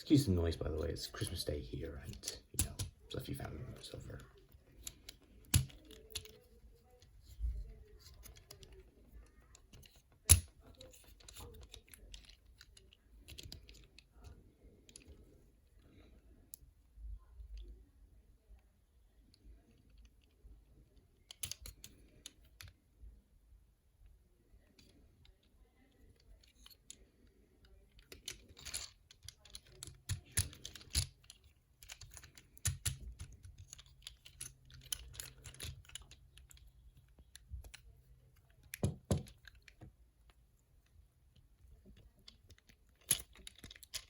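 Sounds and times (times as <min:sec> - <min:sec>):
plastic toy knocks: 0:38.8 - 0:39.3.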